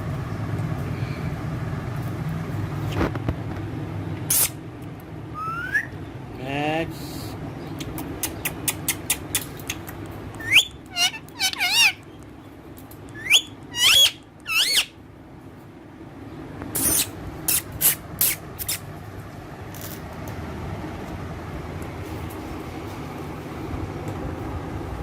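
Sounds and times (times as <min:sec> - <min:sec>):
parrot squawking: 0:05.3 - 0:06.0, 0:10.4 - 0:12.2, 0:13.1 - 0:15.0.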